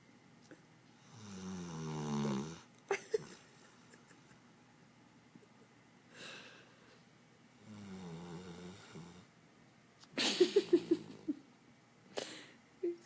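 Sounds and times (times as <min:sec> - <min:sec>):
puppy snoring: 0:01.0 - 0:02.7, 0:07.6 - 0:09.3.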